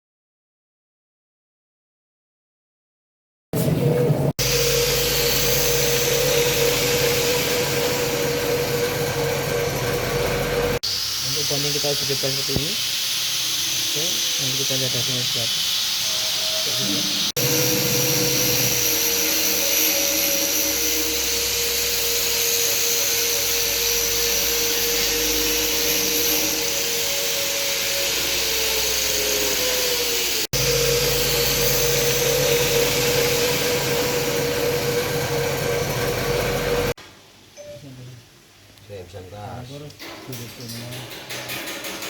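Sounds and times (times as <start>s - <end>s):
loud hiss: 4.4s - 8.9s, 10.6s - 37.0s
machine motor whine: 4.4s - 15.2s, 16.0s - 37.0s.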